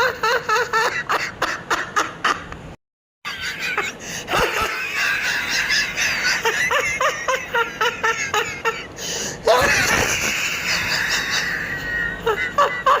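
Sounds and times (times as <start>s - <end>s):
person laughing: 3.3s - 13.0s.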